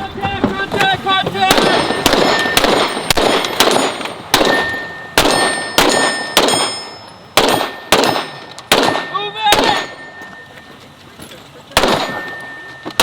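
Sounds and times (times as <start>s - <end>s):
handgun shots: 1.5s - 9.9s
clanging ring of steel targets: 1.5s - 13.0s.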